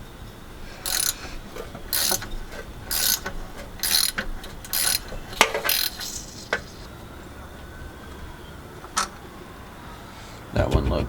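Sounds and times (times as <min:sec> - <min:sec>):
ratchet wrench clicking: 0:00.8 - 0:06.9
sharp metal clicks: 0:00.8 - 0:06.9.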